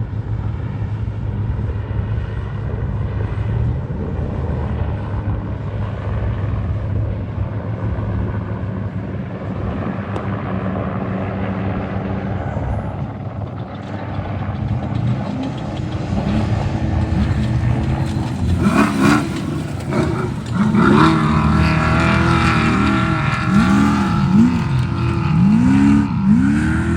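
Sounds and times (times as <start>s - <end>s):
truck engine revving: 12.6s - 26.9s.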